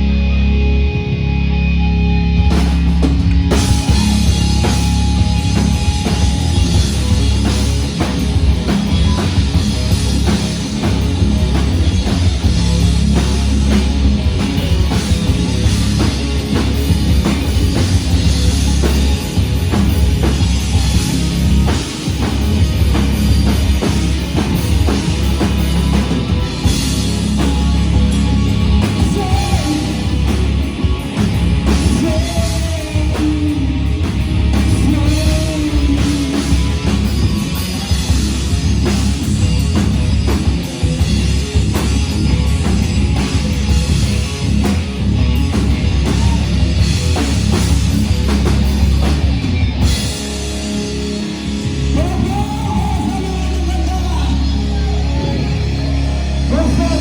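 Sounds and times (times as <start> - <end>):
bass guitar: 0.0 - 57.0
distorted guitar: 0.0 - 57.0
drums: 0.0 - 57.0
person singing: 28.8 - 30.3, 31.7 - 34.0, 34.7 - 36.7.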